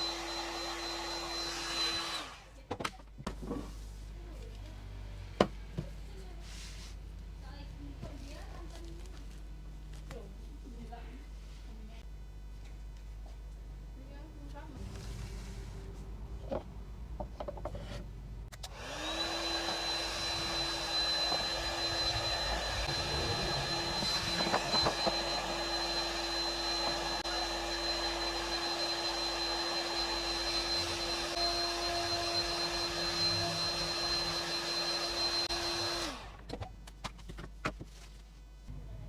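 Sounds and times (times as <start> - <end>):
small electric motor whining: 18.6 - 36.4.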